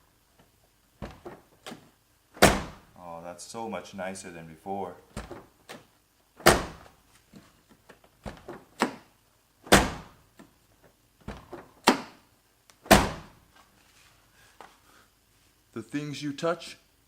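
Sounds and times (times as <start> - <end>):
car door slamming: 2.4 - 2.9, 6.4 - 6.9, 9.6 - 10.2, 12.8 - 13.4.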